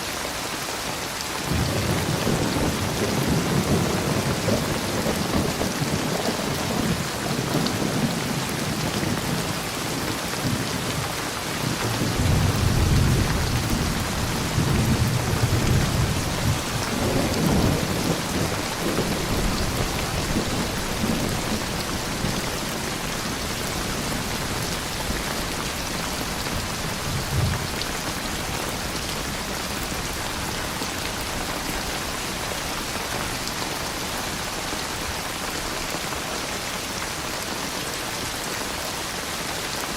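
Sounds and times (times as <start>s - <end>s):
steady rain: 0.0s - 39.9s
rolling thunder: 1.5s - 9.5s, 11.7s - 28.5s.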